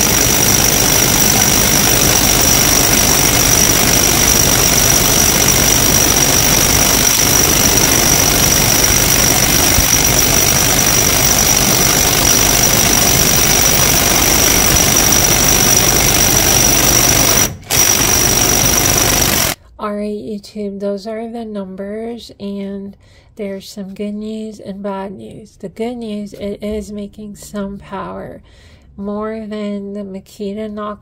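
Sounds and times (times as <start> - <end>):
impact wrench hammering: 0.0 - 19.6.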